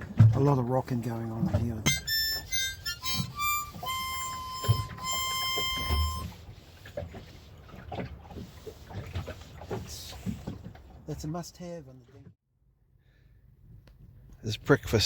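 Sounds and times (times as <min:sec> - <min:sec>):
high harmonica notes: 0:01.9 - 0:06.4.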